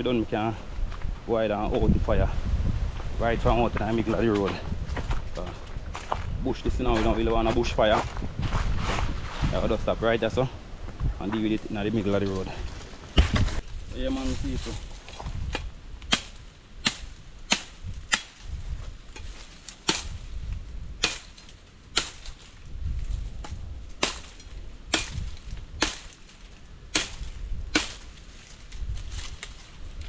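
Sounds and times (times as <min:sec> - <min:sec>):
machete chopping sticks: 0:15.5 - 0:18.4, 0:19.2 - 0:20.2, 0:21.0 - 0:22.4, 0:24.0 - 0:28.2.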